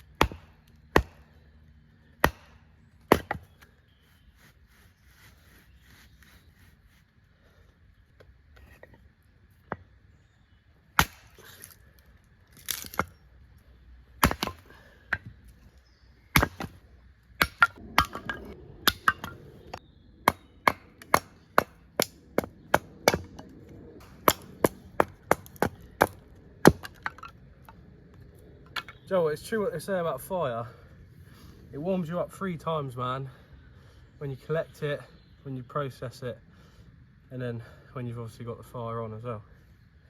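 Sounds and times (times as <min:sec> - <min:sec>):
firewood being chopped: 0:00.0 - 0:01.4, 0:02.1 - 0:03.7, 0:10.9 - 0:11.8, 0:12.5 - 0:13.2, 0:14.2 - 0:15.4, 0:16.3 - 0:16.8, 0:17.4 - 0:27.4.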